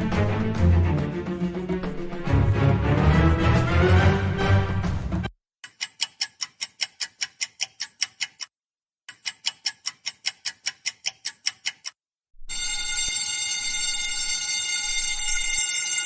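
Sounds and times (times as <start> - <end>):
music: 0.0 - 5.3
clock ticking fast: 5.7 - 8.5, 9.1 - 12.0.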